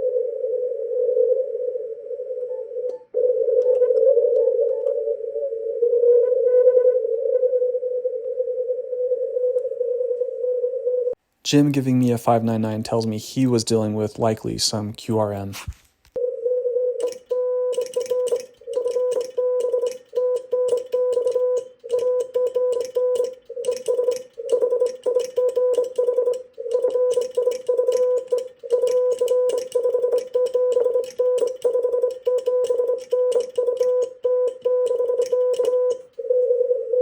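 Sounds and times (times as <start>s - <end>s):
morse code tone: 16.2s - 36.8s
faint keying clicks: 17.0s - 36.3s.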